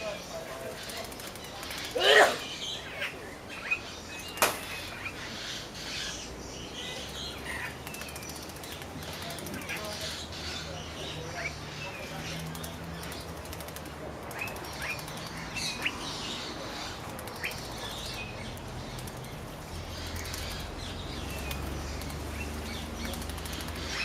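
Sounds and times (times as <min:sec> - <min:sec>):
bird fluttering wings in water: 0:18.8 - 0:24.0.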